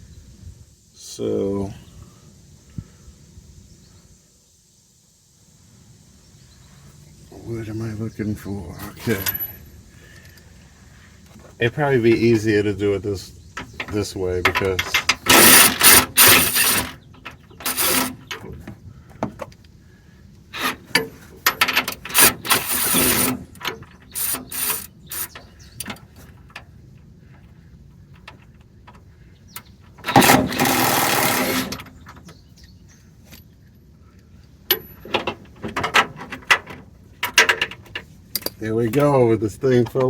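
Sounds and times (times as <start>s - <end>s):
ratchet wrench clicking: 14.5s - 17.0s, 17.6s - 18.3s, 21.5s - 25.9s.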